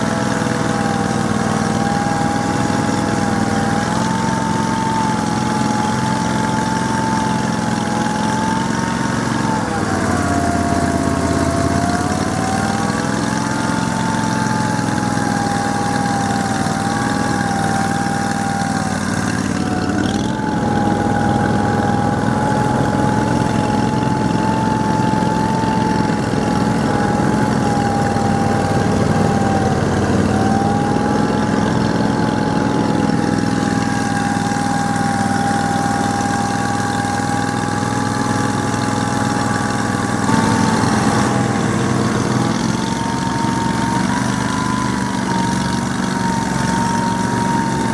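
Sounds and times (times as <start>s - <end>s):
vehicle engine running with whine: 0.0s - 47.9s.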